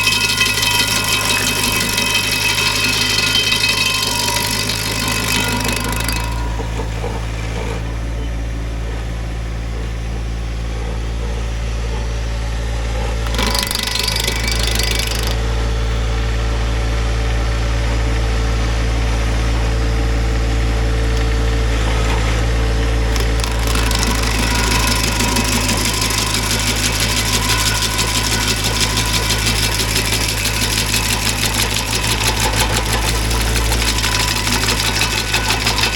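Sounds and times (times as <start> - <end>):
grinder disc grinding stump: 0.0 - 8.1, 13.1 - 15.7, 21.2 - 35.9
stump grinder running: 0.0 - 8.1, 13.0 - 35.9.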